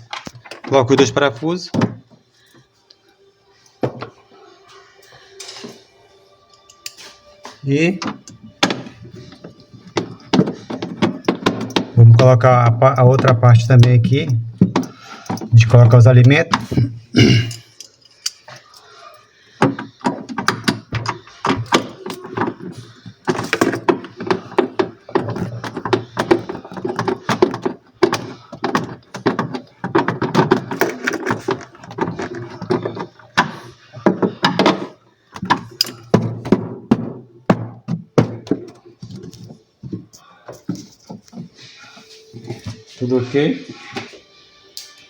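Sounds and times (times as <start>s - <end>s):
containers thunking on fridge shelves: 0.0s - 2.2s, 3.8s - 4.2s, 8.0s - 17.4s, 19.6s - 41.7s.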